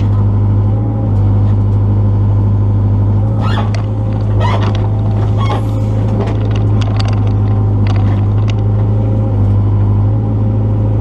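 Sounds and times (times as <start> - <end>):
excavator diesel engine humming: 0.0 - 11.0
short knocks and cracks: 3.5 - 8.9.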